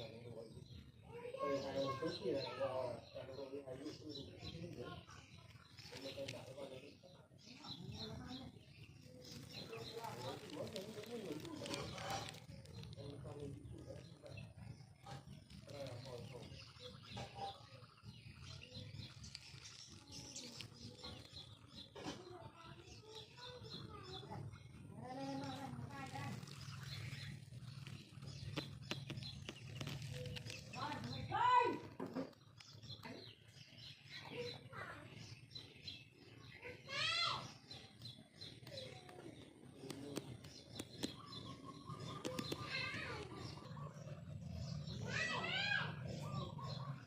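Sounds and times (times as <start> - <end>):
birds chirping: 0.0 - 47.0.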